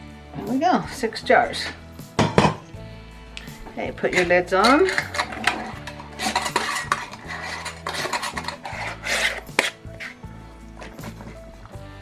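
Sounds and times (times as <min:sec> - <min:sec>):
glass jar clinks: 0:01.6 - 0:02.7, 0:03.4 - 0:11.6
lids screwed onto glass jars: 0:03.5 - 0:11.5.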